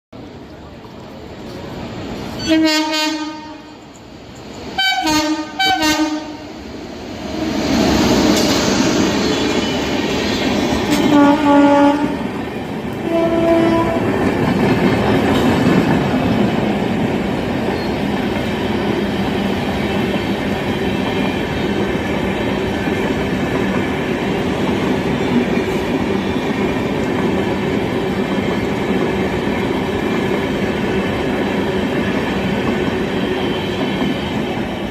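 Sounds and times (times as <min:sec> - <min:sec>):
train rumbling on rails: 0:00.2 - 0:34.9
train horn blasts: 0:02.4 - 0:03.8, 0:04.8 - 0:06.5, 0:10.8 - 0:12.3, 0:13.0 - 0:14.2.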